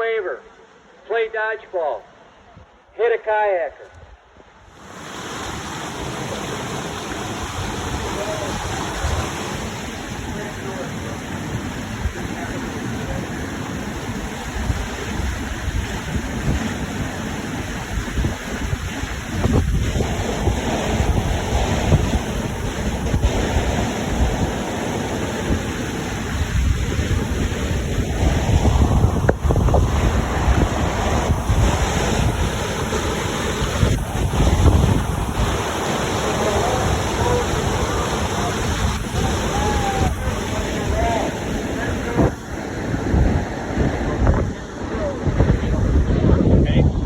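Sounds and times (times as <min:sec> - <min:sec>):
wind buffeting microphone: 0:04.0 - 0:47.0
whitewater rapids rushing: 0:04.7 - 0:47.0
faint voice: 0:36.2 - 0:42.4.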